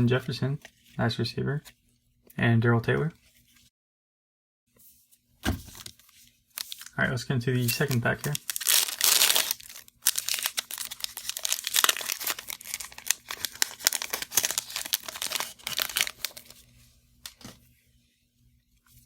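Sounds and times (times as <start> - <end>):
wrapper crinkling and rustling: 5.6 - 7.0, 7.6 - 17.6
plastic wrapper tearing: 6.6 - 7.0, 7.6 - 16.6.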